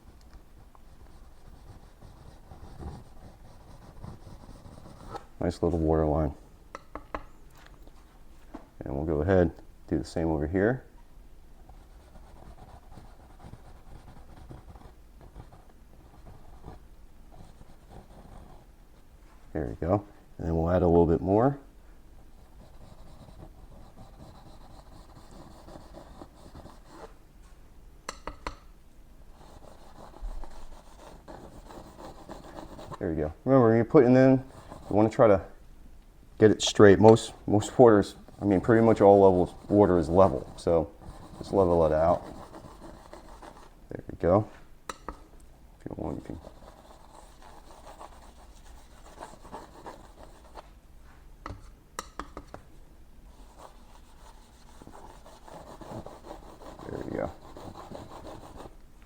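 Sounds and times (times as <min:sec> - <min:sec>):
palette knife scraping paint: 0:00.8 - 0:05.8, 0:11.7 - 0:18.7, 0:22.4 - 0:27.1, 0:29.4 - 0:33.0, 0:34.4 - 0:35.2, 0:37.0 - 0:43.7, 0:46.0 - 0:50.6, 0:53.3 - 0:58.7.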